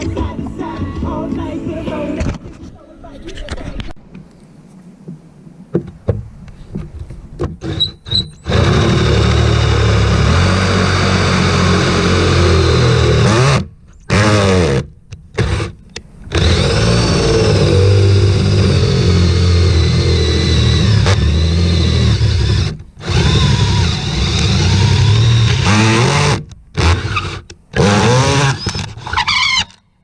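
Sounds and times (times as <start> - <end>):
electric drill whining: 7.6 - 29.7.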